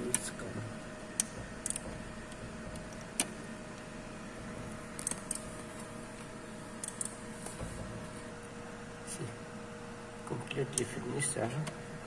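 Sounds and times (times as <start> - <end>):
steady electrical hum: 0.0 - 12.0
light clicks and taps of wiring: 1.2 - 3.9.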